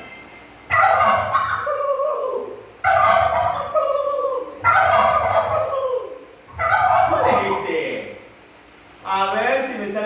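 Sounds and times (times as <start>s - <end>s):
turkey gobbling: 0.7s - 8.3s.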